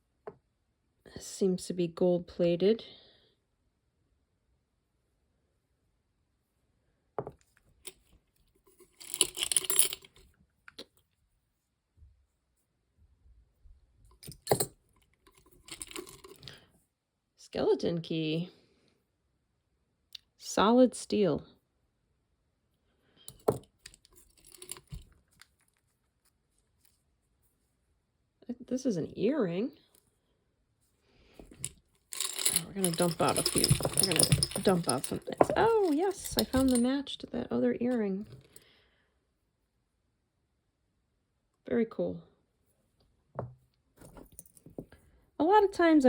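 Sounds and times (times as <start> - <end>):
metal jewelry clinking: 8.7 - 10.2, 14.2 - 16.5, 23.3 - 25.4, 31.4 - 37.0, 44.0 - 44.9.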